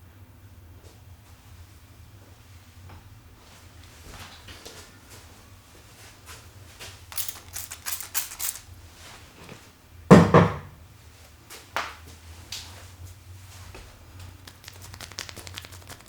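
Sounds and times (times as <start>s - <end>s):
hands brushing and slapping skin: 14.3s - 16.0s.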